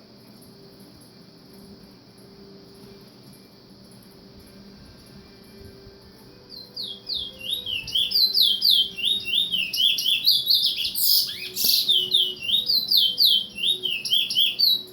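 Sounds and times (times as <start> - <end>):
bird chirping: 6.4 - 14.9
bird squawk: 7.1 - 14.9.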